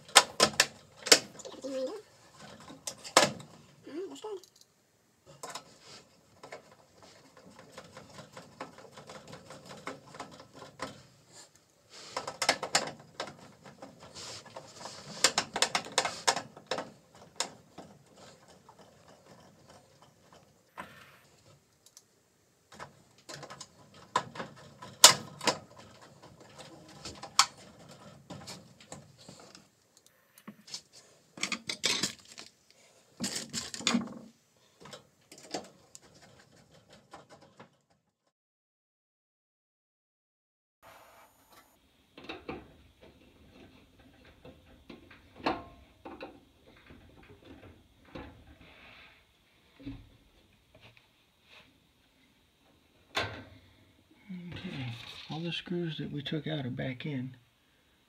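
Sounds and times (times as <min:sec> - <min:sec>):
sheet metal panels rattling: 0:06.3 - 0:11.1, 0:22.8 - 0:29.3.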